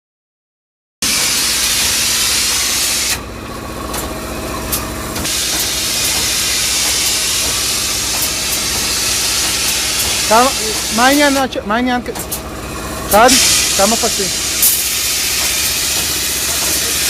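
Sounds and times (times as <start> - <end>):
spray gun hissing: 1.0 - 3.2, 5.2 - 11.6, 12.9 - 17.0
low machine hum: 1.0 - 17.0.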